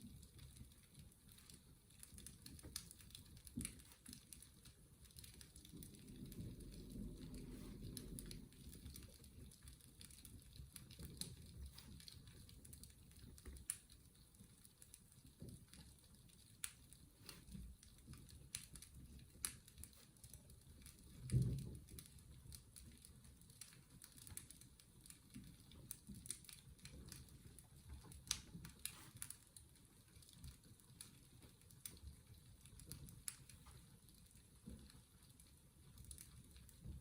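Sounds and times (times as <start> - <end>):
fireplace crackling: 0.0 - 37.0
soft low rumble: 5.5 - 9.6.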